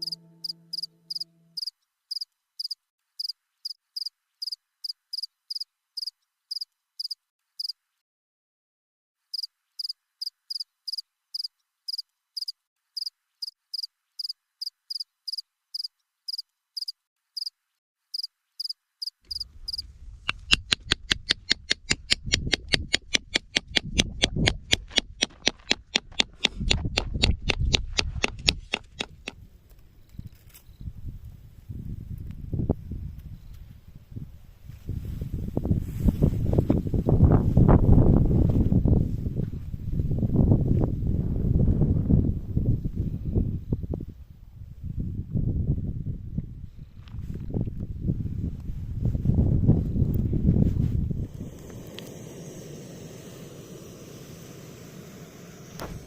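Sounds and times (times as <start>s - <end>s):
low rumbling noise: 50.3s - 56.0s.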